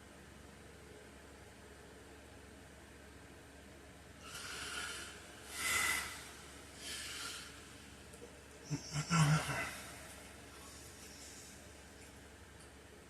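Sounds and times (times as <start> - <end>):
man snorting in sleep: 4.2 - 7.6, 8.7 - 11.5
man breathing noisily: 4.2 - 8.1, 8.7 - 12.0
short low vocal sound: 8.6 - 10.8.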